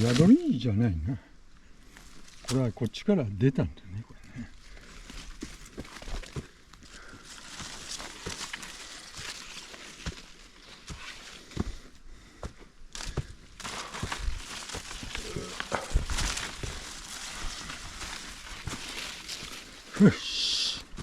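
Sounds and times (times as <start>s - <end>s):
leaves and twigs rustling: 0.0s - 21.0s
footsteps crunching on dirt trail: 4.5s - 21.0s.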